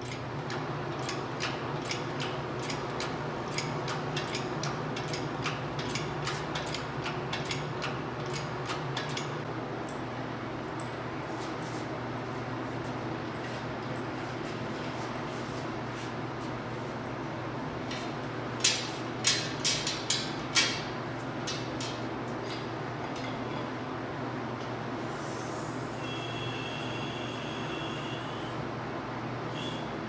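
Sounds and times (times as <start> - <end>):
metal clanks of tools: 17.9 - 23.7.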